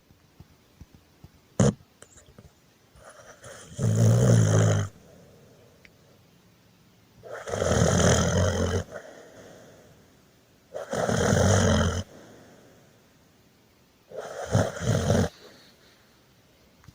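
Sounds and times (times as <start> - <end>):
person snoring: 3.2 - 5.0, 7.3 - 10.0, 10.8 - 12.7, 14.1 - 15.6.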